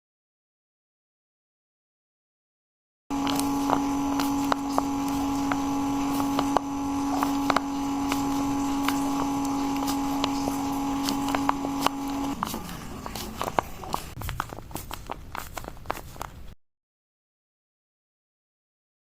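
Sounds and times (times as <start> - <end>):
small electric motor humming: 3.1 - 14.6.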